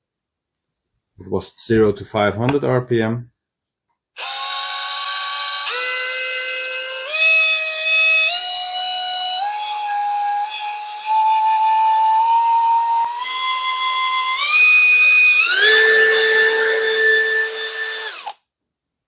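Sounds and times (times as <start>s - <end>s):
cordless drill motor whine: 4.2s - 18.4s.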